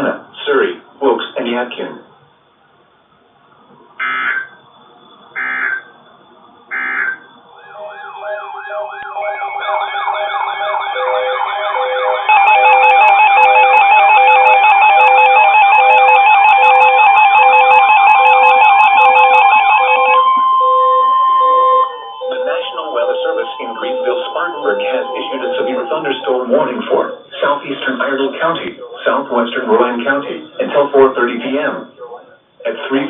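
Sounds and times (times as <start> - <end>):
pulsing beeps: 4.0 - 29.2
wavering siren-like sweeps: 4.0 - 29.2
digital data tones: 4.0 - 32.0.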